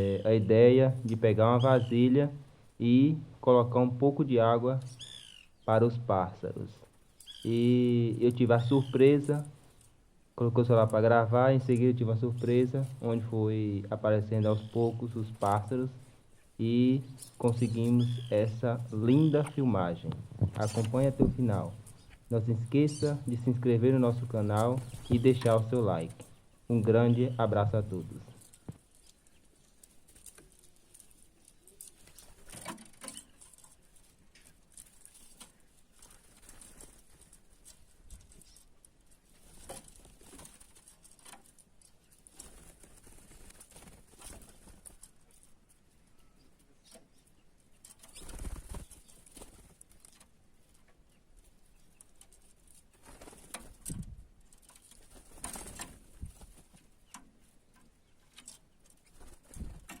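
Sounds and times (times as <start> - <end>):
bird wings fluttering: 28.1 - 38.7, 39.3 - 45.5, 47.9 - 50.3, 52.0 - 57.0, 58.9 - 60.0.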